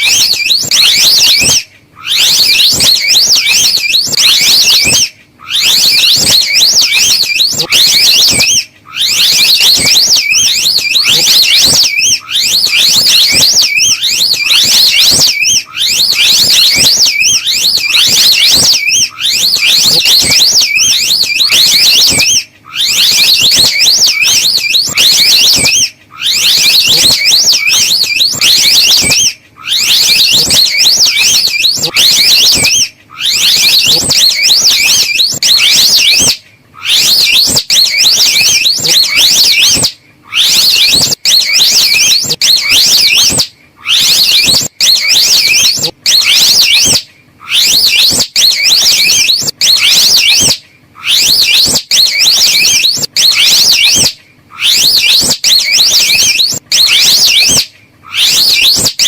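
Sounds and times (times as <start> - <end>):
high-pitched warbling trill: 0.0 - 36.3.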